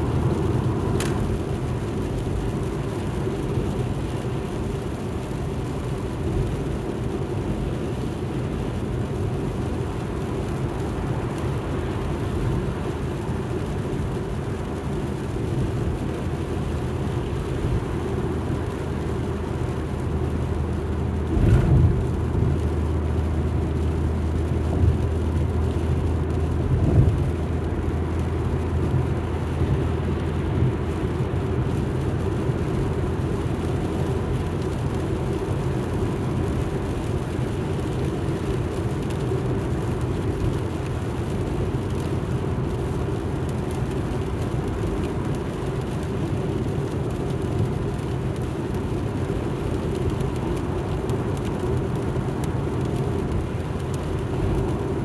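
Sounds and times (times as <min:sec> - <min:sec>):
car engine hum: 0:00.0 - 0:55.0
road rumble: 0:00.0 - 0:55.0.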